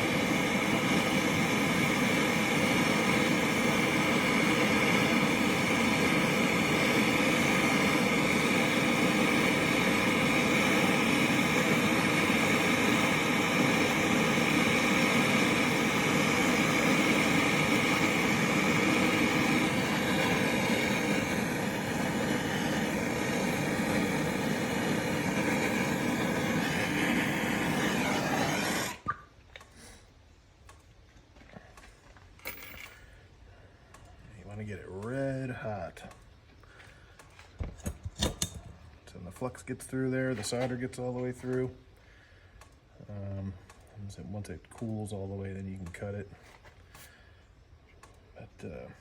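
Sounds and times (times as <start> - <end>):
torch shut-off click: 0.0 - 29.7
gas torch hissing: 0.0 - 30.0.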